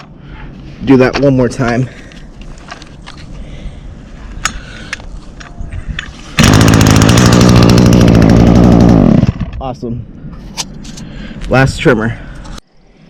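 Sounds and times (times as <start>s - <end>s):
recoil starter pull: 6.4s - 9.5s
string trimmer engine running: 6.4s - 9.5s.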